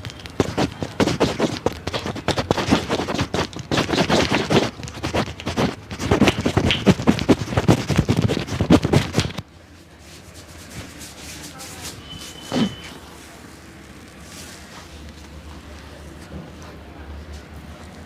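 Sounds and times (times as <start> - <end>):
hands slapping and rubbing skin: 0.0 - 9.4.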